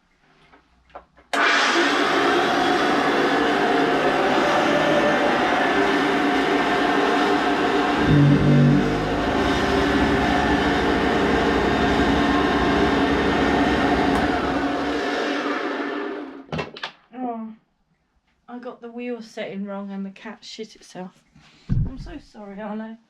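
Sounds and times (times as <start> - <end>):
vacuum cleaner motor whine: 1.4 - 16.4
loud low hum: 2.9 - 15.2.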